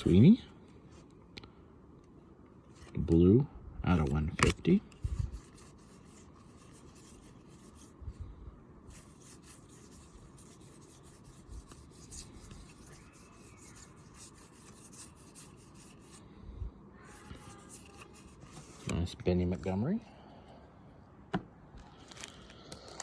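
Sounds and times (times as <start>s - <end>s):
cards rubbing and sliding: 4.0s - 8.0s, 8.9s - 16.2s, 17.0s - 19.1s.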